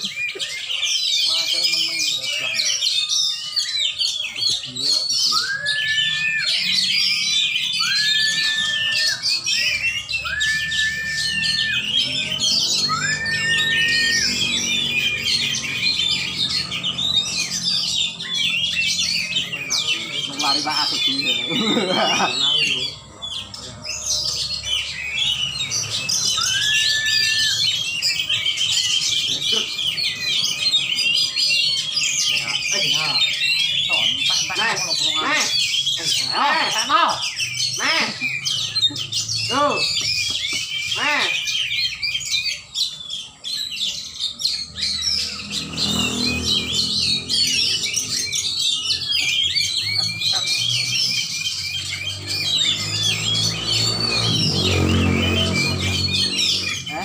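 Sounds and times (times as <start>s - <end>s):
songbirds chirping and trilling: 0.0s - 57.0s
whistled bird note: 4.9s - 16.1s, 24.8s - 28.9s.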